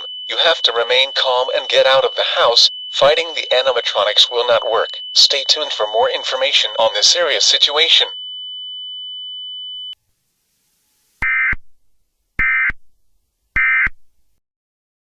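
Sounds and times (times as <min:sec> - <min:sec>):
bursts of data tones: 0:00.0 - 0:08.1, 0:11.2 - 0:11.6
steady high-pitched tone: 0:00.0 - 0:10.0.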